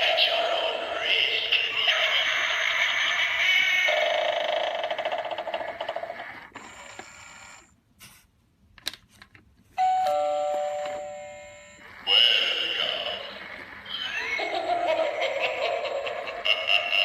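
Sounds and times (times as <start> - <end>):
pulsing spooky recording: 0.0 - 6.4, 11.0 - 17.0
doorbell chime ringing: 9.8 - 11.8.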